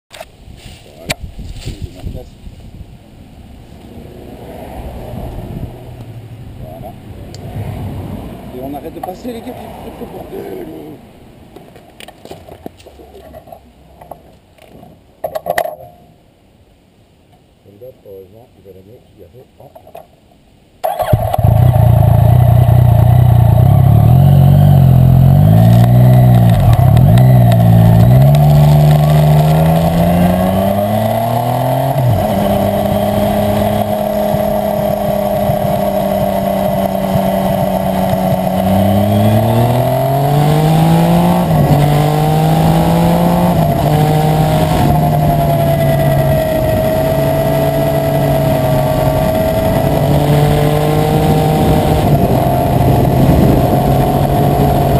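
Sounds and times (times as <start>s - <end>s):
motorcycle engine revving: 20.8s - 54.9s.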